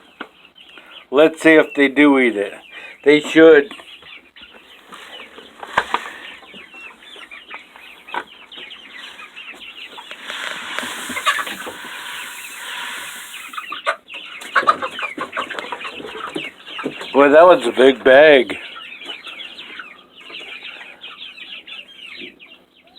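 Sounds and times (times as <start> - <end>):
chick peeps: 0.0 - 22.9
chickens clucking and squawking: 0.0 - 22.9
rustling noise: 4.8 - 6.4, 8.9 - 13.8.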